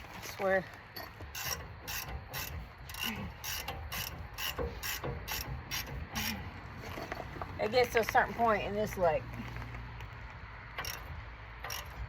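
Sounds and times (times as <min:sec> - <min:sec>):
ratchet wrench clicking: 0:01.0 - 0:06.4, 0:10.7 - 0:12.0.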